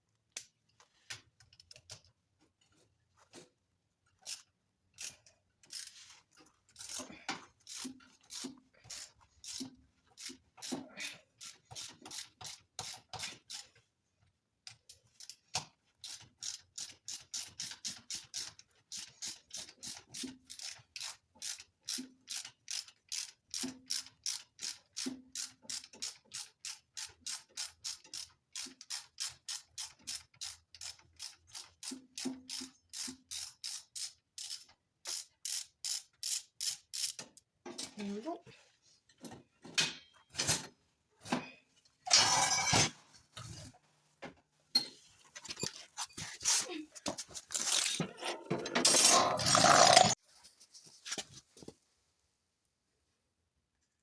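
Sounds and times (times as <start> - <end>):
ratchet wrench clicking: 4.2 - 5.9, 6.7 - 7.0, 7.6 - 10.7, 16.0 - 37.2.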